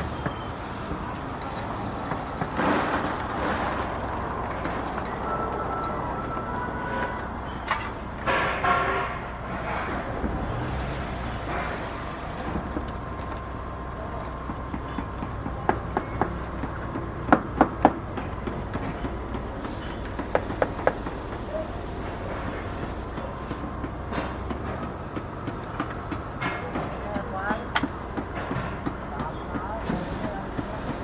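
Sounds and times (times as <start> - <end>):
construction machinery drone: 0.0 - 31.0
sharp knocks: 2.0 - 13.4.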